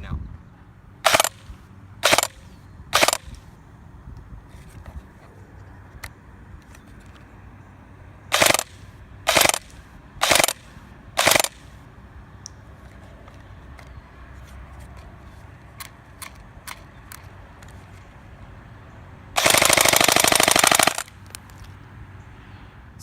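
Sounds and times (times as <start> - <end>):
airsoft rifle firing bursts: 1.0 - 1.4, 2.0 - 2.4, 3.0 - 3.3, 8.3 - 10.6, 11.2 - 11.6, 19.4 - 21.2.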